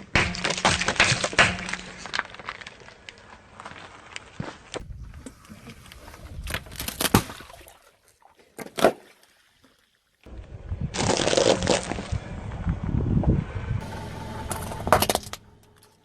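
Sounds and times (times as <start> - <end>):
objects cracking under car tyre: 0.0 - 5.4, 6.3 - 7.4, 10.9 - 12.7.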